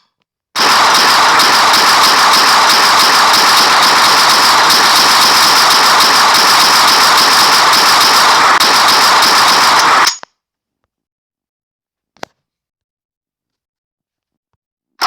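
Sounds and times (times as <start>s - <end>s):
electric shock crackling buzz: 0.6s - 10.1s.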